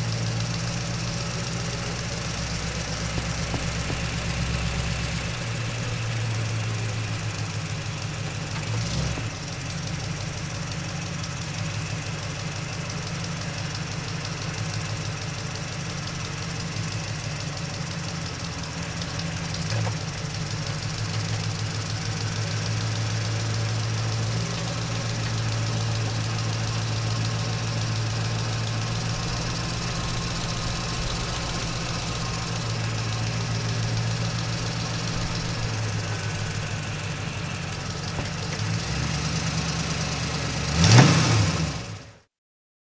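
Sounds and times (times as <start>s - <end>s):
truck engine low hum: 0.0s - 42.1s
dull knock: 3.0s - 5.4s.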